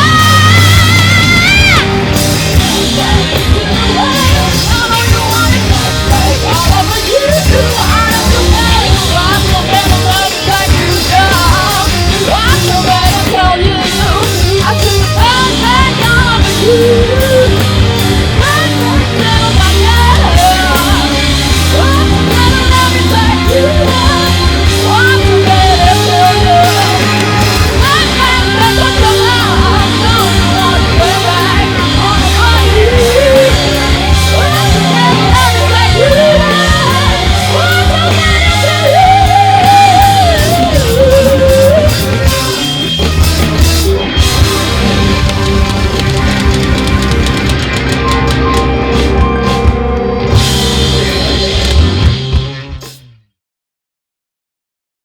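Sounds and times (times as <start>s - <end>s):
lead vocal singing: 0.0s - 46.3s
live rock band playing: 0.0s - 53.2s.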